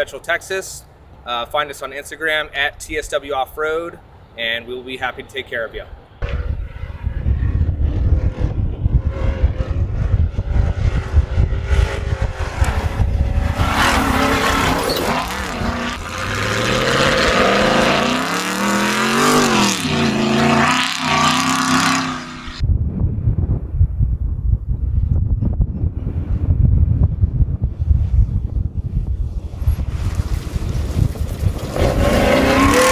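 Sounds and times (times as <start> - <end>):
truck engine revving: 6.2 - 22.6, 29.5 - 32.9.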